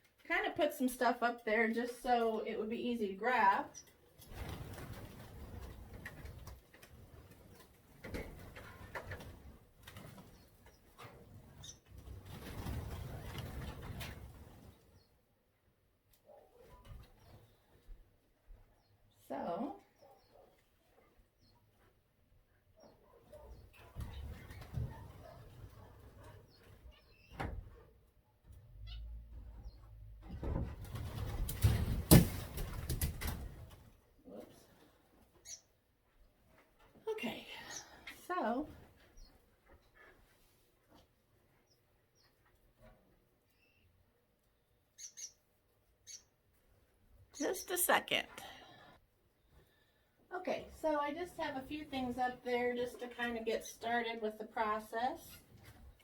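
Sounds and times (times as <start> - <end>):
birds calling softly: 10.2 - 12.2, 18.7 - 27.4, 35.4 - 35.9, 43.4 - 46.5
faint bird chirps: 44.9 - 45.4.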